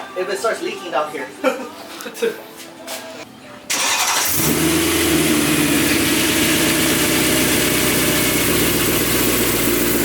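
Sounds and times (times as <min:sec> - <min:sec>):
car engine idling: 0:03.7 - 0:10.0.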